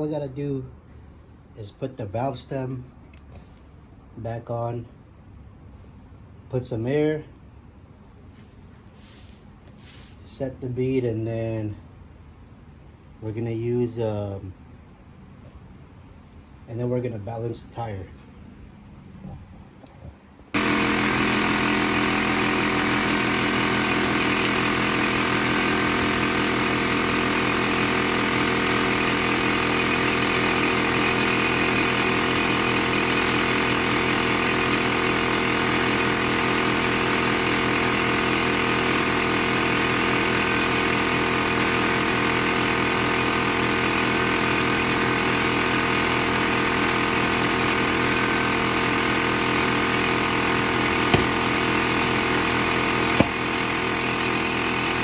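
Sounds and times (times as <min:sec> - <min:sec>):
air compressor running: 0:00.0 - 0:04.2, 0:08.0 - 0:10.4, 0:20.5 - 0:55.0.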